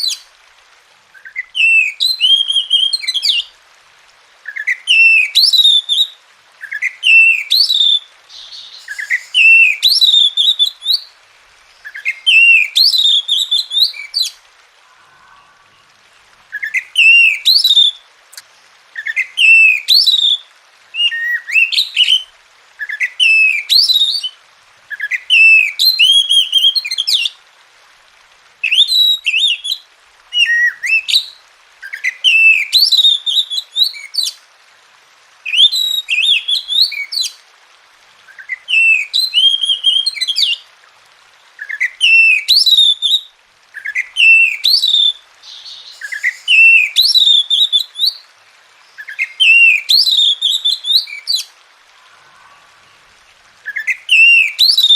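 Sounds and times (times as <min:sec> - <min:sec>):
bird singing whistled phrases: 0:01.2 - 0:03.5, 0:04.4 - 0:11.1, 0:11.8 - 0:18.4, 0:19.0 - 0:20.4, 0:21.0 - 0:27.2, 0:28.6 - 0:29.8, 0:30.4 - 0:34.3, 0:38.3 - 0:40.6, 0:41.6 - 0:48.2, 0:48.9 - 0:53.0, 0:53.6 - 0:54.9.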